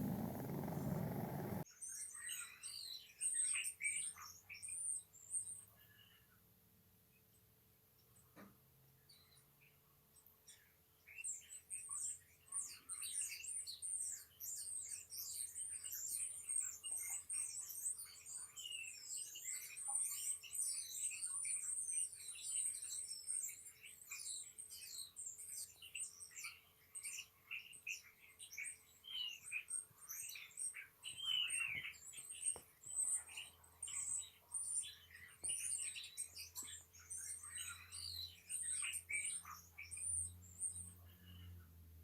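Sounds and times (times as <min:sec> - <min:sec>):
faint steady hum: 0:00.0 - 0:01.6
small birds chirping: 0:00.0 - 0:04.7, 0:10.5 - 0:41.8.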